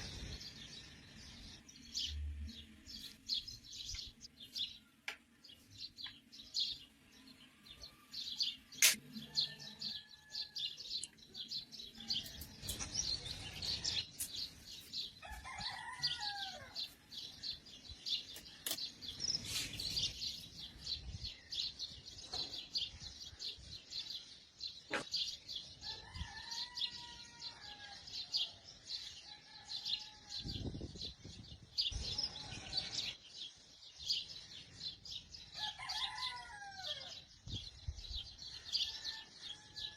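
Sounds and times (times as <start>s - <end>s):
small birds chirping: 0.0s - 39.7s
sharp clicks: 8.8s - 9.1s
rooster crowing: 15.2s - 16.8s, 35.6s - 37.1s.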